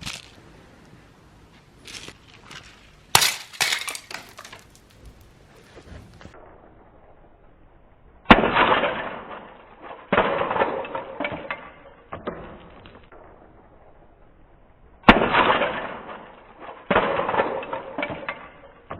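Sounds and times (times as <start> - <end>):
grenade sharp bang: 8.3 - 10.8.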